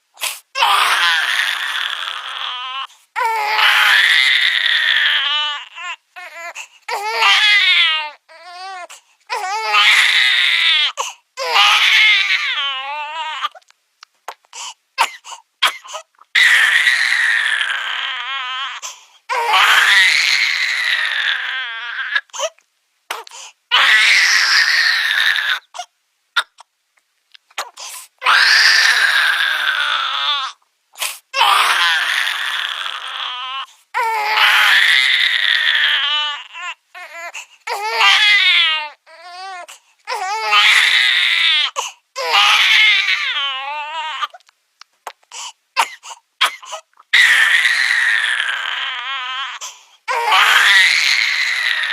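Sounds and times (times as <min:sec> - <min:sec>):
cartoon baby crying: 0:47.2 - 0:51.9.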